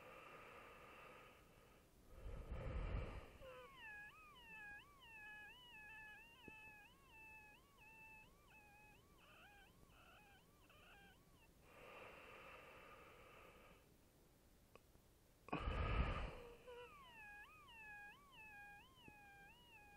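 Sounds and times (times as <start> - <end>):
breathy hiss: 0.0 - 4.5, 10.9 - 13.9, 15.5 - 17.6
high whistling wheeze: 2.2 - 12.7, 15.6 - 19.9.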